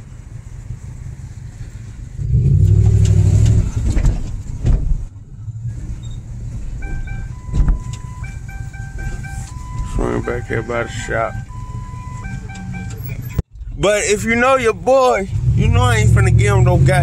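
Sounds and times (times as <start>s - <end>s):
car engine driving: 0.0s - 17.0s
repeating electronic chime: 6.8s - 13.2s.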